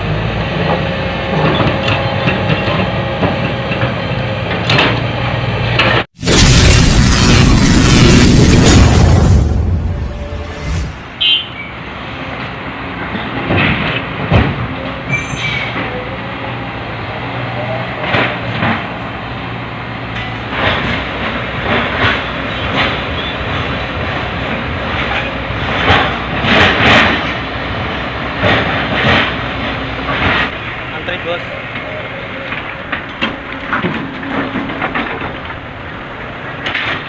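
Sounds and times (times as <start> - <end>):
diesel machinery running: 0.0 - 37.0
rock clanking in steel truck body: 20.1 - 30.7, 32.4 - 37.0.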